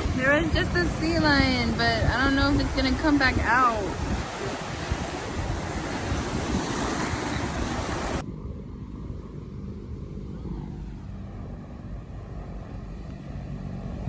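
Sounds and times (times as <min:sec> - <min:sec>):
surf washing over rocks: 0:00.0 - 0:08.2
wind buffeting microphone: 0:00.0 - 0:14.0.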